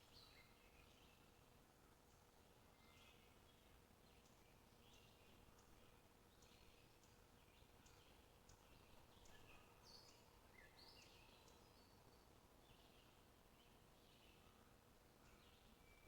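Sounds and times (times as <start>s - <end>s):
steady low hiss: 0.0s - 16.0s.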